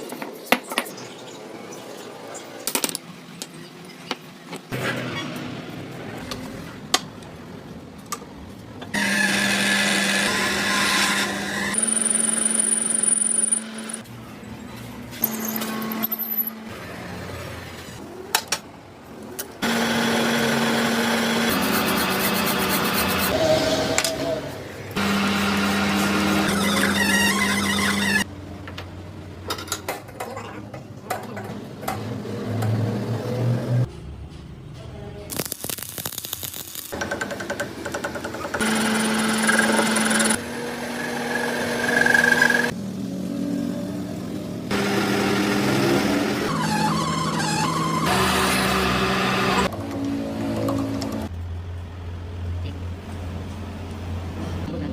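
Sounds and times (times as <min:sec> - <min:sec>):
low shop noise: 0:00.0 - 0:54.9
power tool running: 0:09.0 - 0:14.0, 0:19.6 - 0:23.4, 0:38.6 - 0:42.7.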